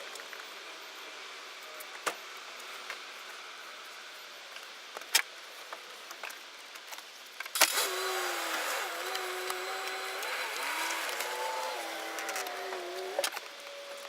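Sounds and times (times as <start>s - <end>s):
steady humming whine: 7.6s - 14.0s.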